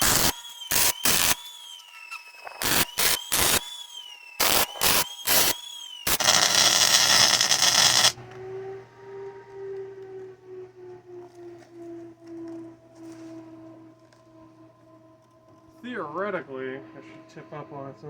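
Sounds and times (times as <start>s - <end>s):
arc welder bursts: 0.0s - 8.2s
steady hum: 6.1s - 8.2s.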